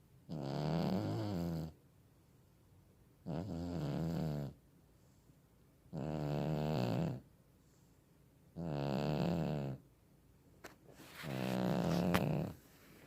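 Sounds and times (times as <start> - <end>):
cat snoring: 0.3 - 1.8, 3.2 - 4.6, 5.9 - 7.3, 8.6 - 9.8, 11.2 - 12.6.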